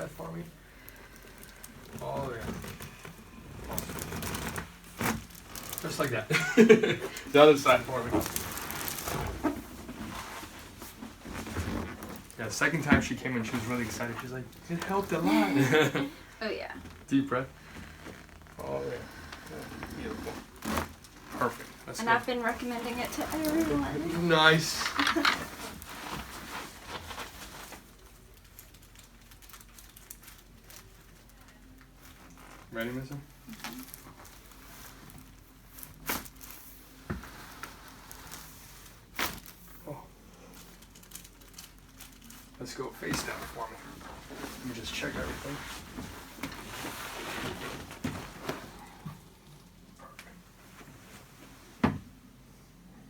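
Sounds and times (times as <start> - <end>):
faint rustling: 0.0 - 51.8.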